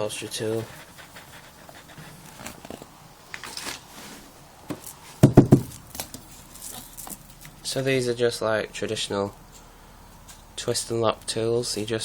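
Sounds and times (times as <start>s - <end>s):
plastic vacuum attachments handled: 2.2s - 3.9s
sharp knocks: 4.7s - 5.9s.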